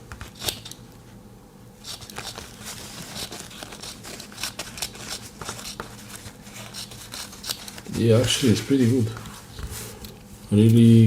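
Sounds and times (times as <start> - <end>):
paper crinkling and rustling: 1.8 - 10.0.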